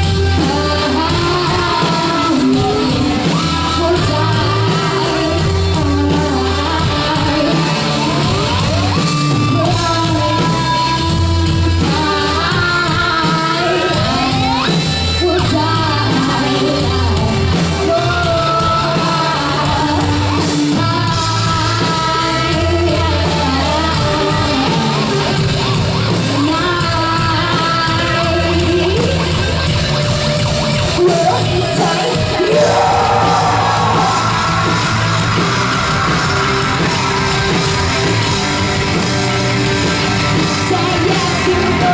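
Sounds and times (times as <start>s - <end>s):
hard rock band: 0.0s - 41.9s
woman singing and yelling: 0.2s - 25.3s, 31.0s - 35.4s, 40.5s - 41.9s.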